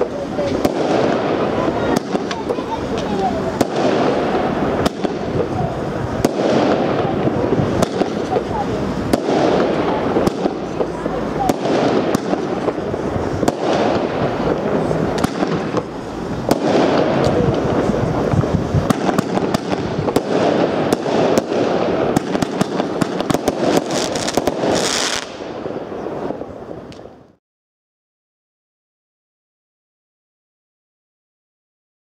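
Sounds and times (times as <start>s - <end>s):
firework crackling and banging: 0.0s - 27.4s.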